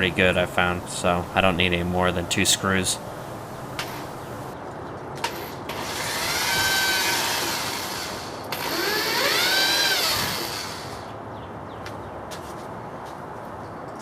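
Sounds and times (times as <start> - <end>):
power drill driving screws: 5.2 - 11.1.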